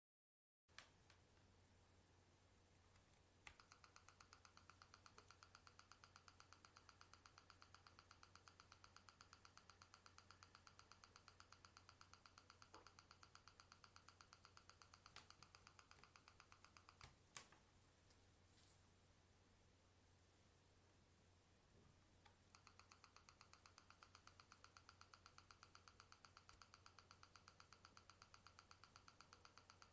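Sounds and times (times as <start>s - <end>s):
sharp clicks: 2.9s - 17.6s, 22.2s - 29.9s
rapid electronic ticking: 3.4s - 17.2s, 22.2s - 29.9s.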